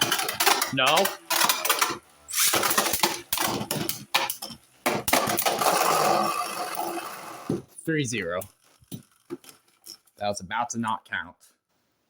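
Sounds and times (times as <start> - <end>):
spinning tops clashing and clattering: 0.0 - 7.6.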